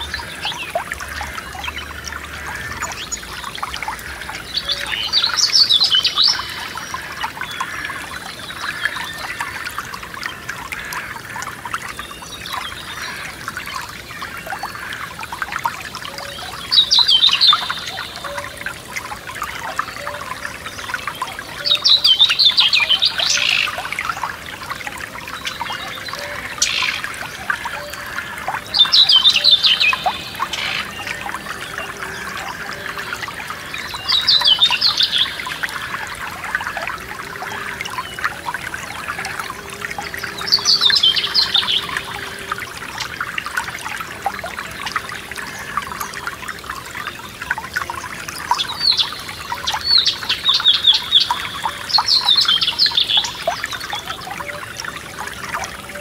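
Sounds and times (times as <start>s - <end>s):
stream trickling and splashing: 0.0s - 56.0s.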